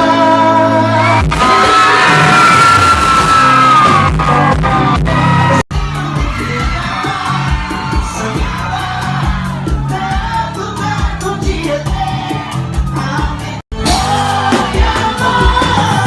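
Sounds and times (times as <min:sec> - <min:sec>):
lead singer: 0:00.0 - 0:16.0
live band music: 0:00.0 - 0:16.0
steady drum beat: 0:03.7 - 0:16.0.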